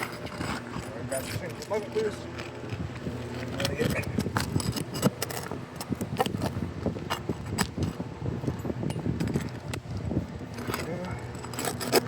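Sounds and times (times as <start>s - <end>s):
shingles being pried up: 10.6s - 12.0s.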